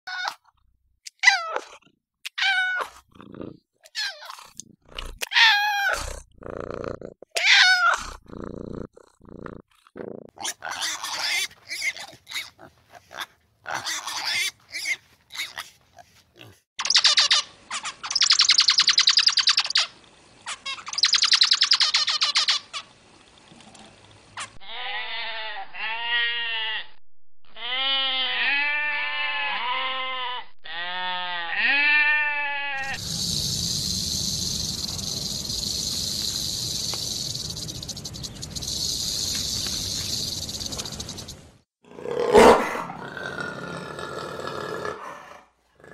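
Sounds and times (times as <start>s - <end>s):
cat meowing: 7.4s - 8.1s
wavering bleats: 24.6s - 26.9s
rasping animal calls: 27.6s - 41.3s.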